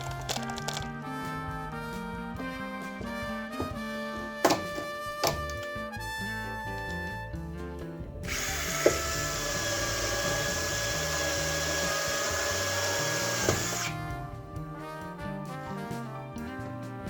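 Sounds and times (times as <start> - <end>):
background music: 0.0 - 17.0
handheld power tool running: 8.3 - 14.0.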